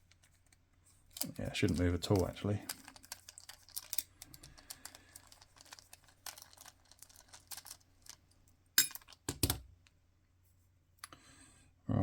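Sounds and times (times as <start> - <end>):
lock picking clicks and scraping: 1.1 - 8.2.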